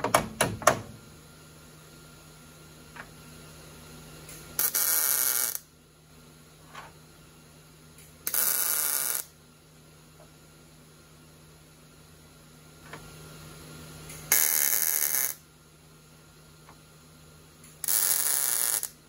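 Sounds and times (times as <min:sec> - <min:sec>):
welder tack welds: 0:04.3 - 0:05.7, 0:08.2 - 0:09.3, 0:14.1 - 0:15.4, 0:17.8 - 0:19.0.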